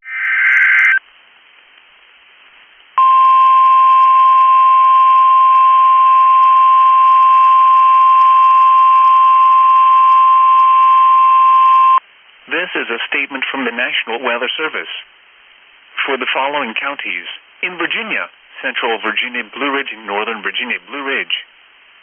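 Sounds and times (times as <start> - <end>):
digital data warble: 0.0 - 1.0
faint hiss: 0.1 - 5.0, 12.0 - 22.0
steady loud alarm tone: 3.0 - 12.0.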